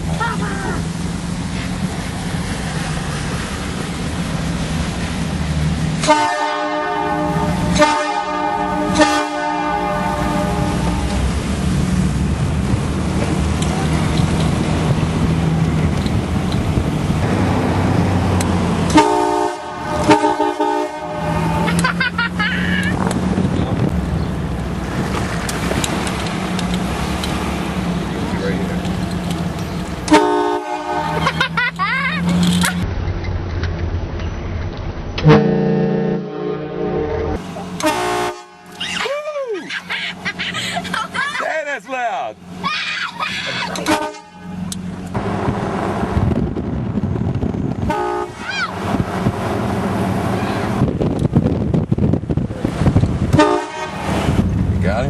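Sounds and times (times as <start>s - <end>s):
car engine and road noise: 0.0s - 55.0s
person crying out: 0.1s - 0.9s, 38.9s - 41.4s, 42.6s - 43.8s, 48.4s - 48.8s
loud air horn blasts: 6.0s - 11.3s, 18.9s - 21.8s, 30.1s - 31.3s, 35.2s - 38.9s, 43.8s - 44.7s, 47.8s - 48.4s, 53.3s - 54.2s.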